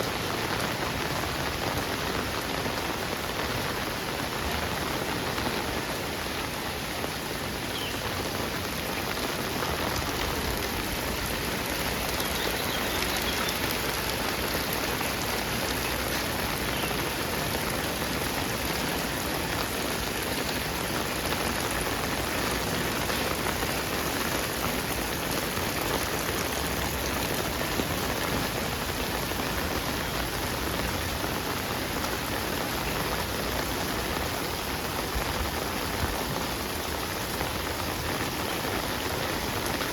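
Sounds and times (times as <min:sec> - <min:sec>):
heavy rain on hard surfaces: 0:00.0 - 0:39.9.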